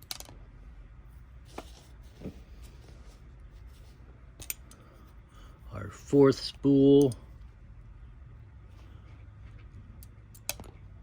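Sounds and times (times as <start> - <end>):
small clicks of lock pins: 4.4 - 4.8, 10.0 - 10.8.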